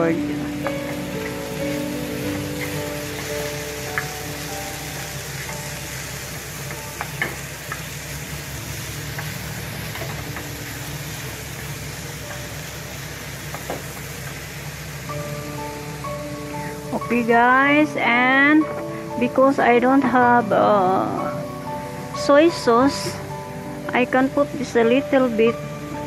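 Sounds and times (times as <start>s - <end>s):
chicken sizzling in a pan: 0.0s - 19.0s.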